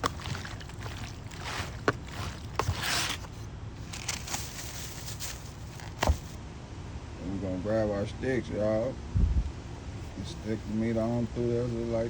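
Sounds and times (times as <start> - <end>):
hands mixing raw chicken: 0.0 - 6.4
scraping in a container: 0.0 - 6.4.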